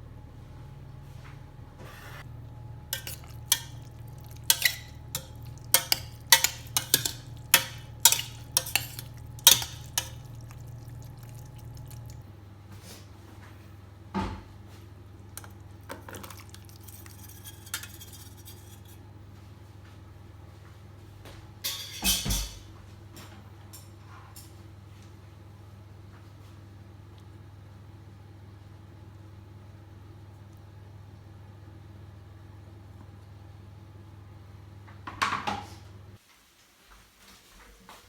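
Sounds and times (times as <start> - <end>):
utensils clinking against dishes: 3.0 - 12.2, 16.0 - 19.0, 21.6 - 22.7.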